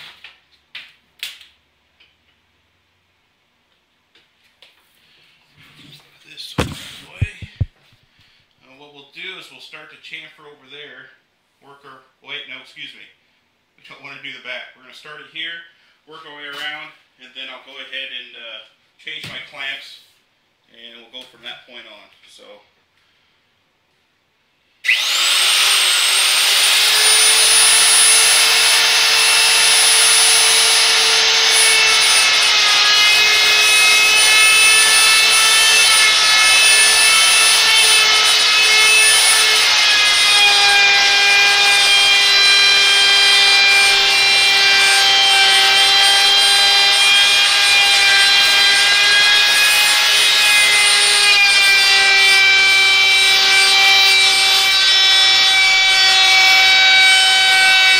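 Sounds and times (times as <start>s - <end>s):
router high whine: 6.6s - 7.7s, 24.9s - 54.8s.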